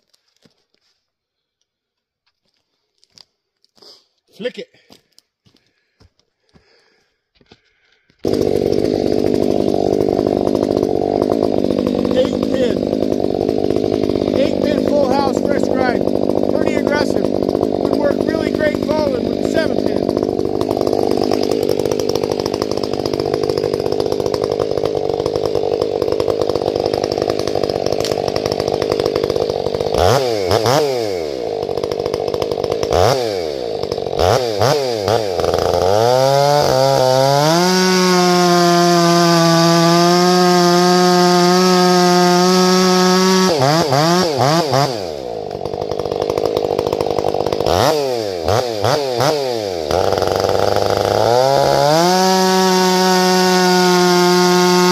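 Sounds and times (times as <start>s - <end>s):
chainsaw cutting and revving: 7.7s - 54.9s.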